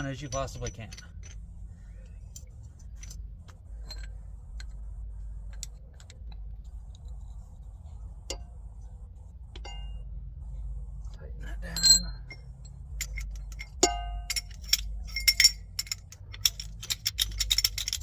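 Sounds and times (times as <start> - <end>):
light metal clicks and clinks: 0.0 - 4.8, 11.1 - 18.0
steady low hum: 0.0 - 18.0.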